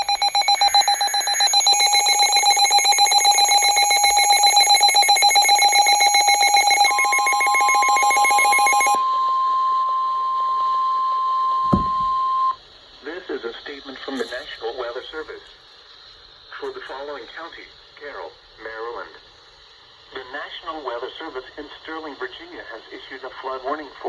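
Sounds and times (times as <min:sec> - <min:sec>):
rapid pulsing electronic alarm: 0:00.0 - 0:12.6
steady alarm tone: 0:00.0 - 0:12.6.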